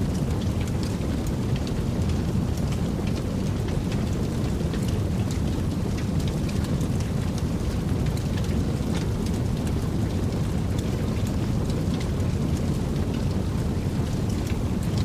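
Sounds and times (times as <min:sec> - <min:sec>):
fire crackles and pops: 0:00.0 - 0:15.0
fire roaring: 0:00.0 - 0:15.0.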